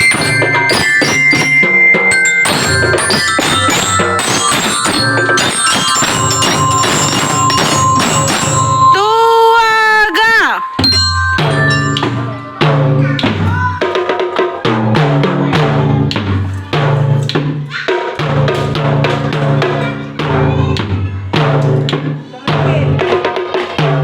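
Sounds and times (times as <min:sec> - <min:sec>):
bass and snare drums: 0:00.0 - 0:09.0, 0:10.8 - 0:24.0
sustained melody notes: 0:00.0 - 0:13.4
drum band playing: 0:00.0 - 0:24.0.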